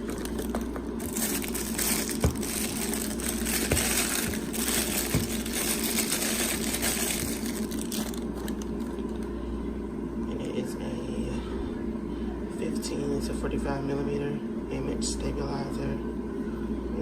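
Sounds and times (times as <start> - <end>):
packaging crinkling and rustling: 0.0 - 9.3
steady low hum: 0.0 - 17.0.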